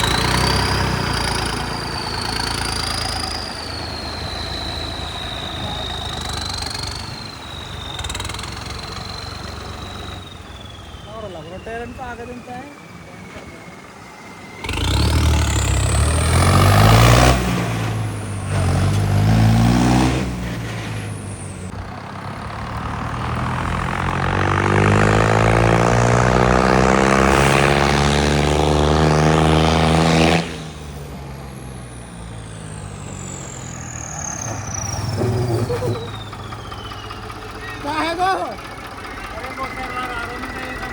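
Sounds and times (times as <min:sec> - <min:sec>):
diesel tractor engine revving: 0:00.0 - 0:40.9.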